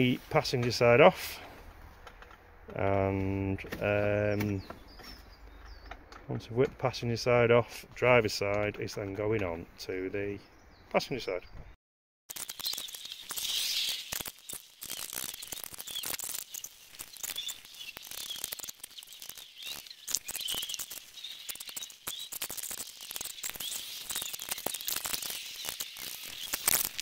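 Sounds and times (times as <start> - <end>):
small clicks and knocks: 2.0 - 2.8, 4.7 - 6.9
birds chirping: 2.1 - 11.8, 12.4 - 27.0.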